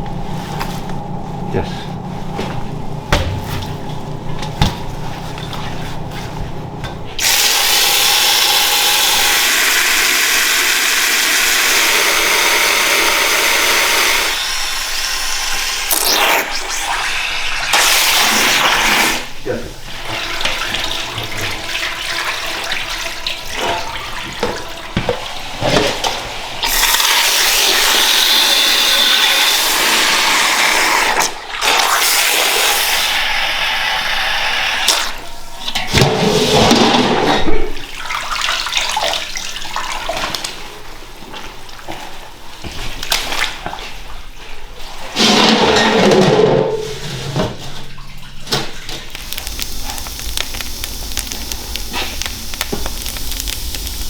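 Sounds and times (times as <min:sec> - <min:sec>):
water running and splashing: 0:47.6 - 0:54.0.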